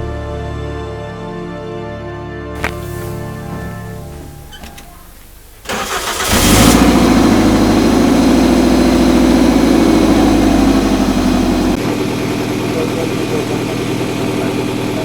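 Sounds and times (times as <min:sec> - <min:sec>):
car engine starting and running: 0:02.6 - 0:15.0.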